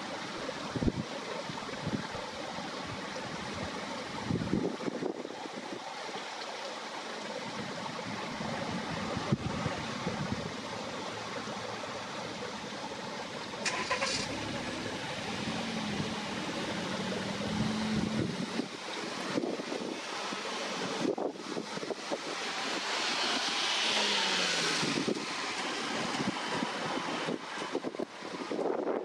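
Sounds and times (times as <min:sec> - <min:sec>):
car engine running: 0:13.6 - 0:19.4.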